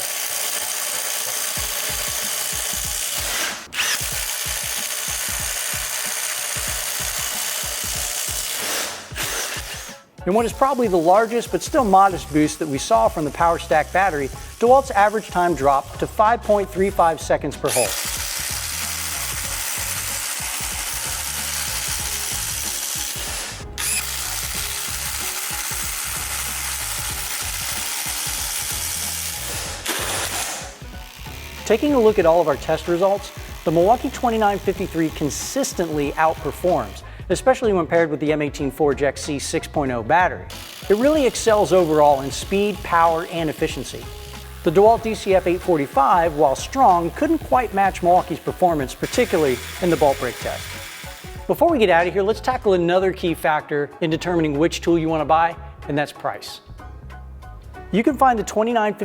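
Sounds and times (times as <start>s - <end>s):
impact driver boring through wood: 0.0s - 15.9s, 17.6s - 37.2s, 40.5s - 51.6s.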